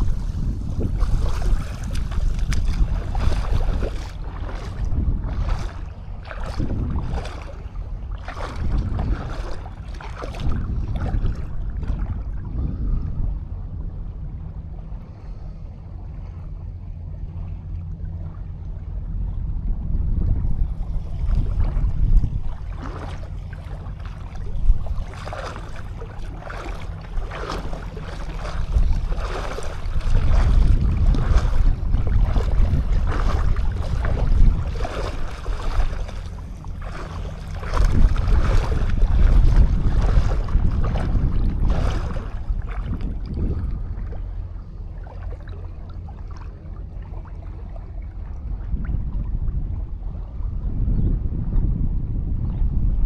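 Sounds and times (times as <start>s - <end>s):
waves washing onto sandy shore: 0.0s - 11.5s, 22.5s - 43.2s
wind buffeting microphone: 0.0s - 53.0s.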